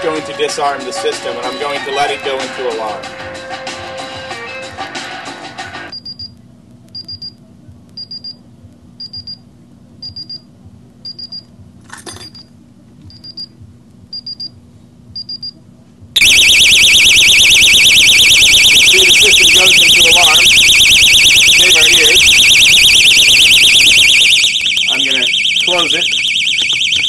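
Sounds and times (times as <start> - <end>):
loud warbling siren: 16.2 - 27.0
security system beeping: 16.2 - 27.0.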